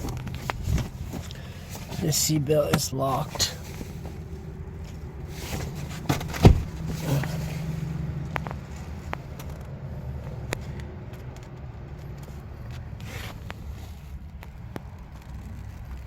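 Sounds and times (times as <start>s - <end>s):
steady low rumble: 0.0s - 11.9s
car door shutting: 5.5s - 7.7s.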